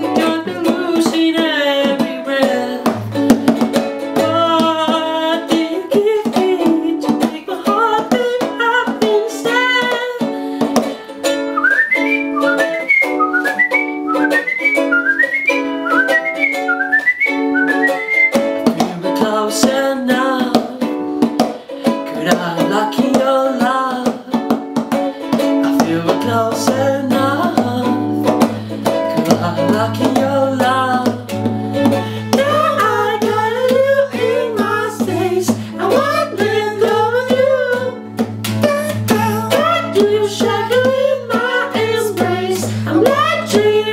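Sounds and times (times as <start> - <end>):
percussive taps: 0.0 - 11.0, 16.0 - 19.8, 20.4 - 43.8
ukulele and acoustic guitar: 0.0 - 43.9
whistled melody: 11.3 - 18.6.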